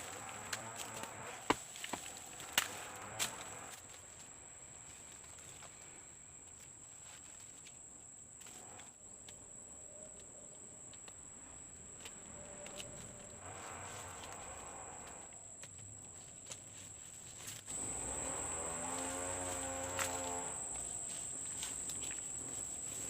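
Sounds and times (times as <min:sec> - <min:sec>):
high-pitched insect drone: 0:17.7 - 0:23.0.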